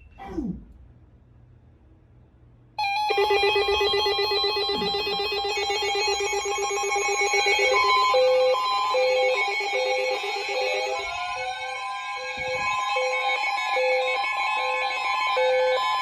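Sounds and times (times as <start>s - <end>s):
beep alternating low and high: 2.8s - 16.0s
loud ringing alert alarm: 2.8s - 16.0s.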